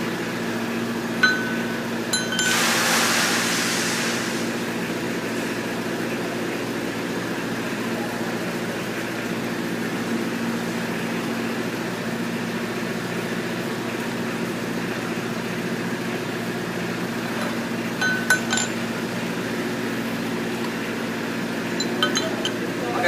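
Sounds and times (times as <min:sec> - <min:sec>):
metallic clinks of tools: 0:01.2 - 0:02.6, 0:18.0 - 0:18.8, 0:21.8 - 0:22.6.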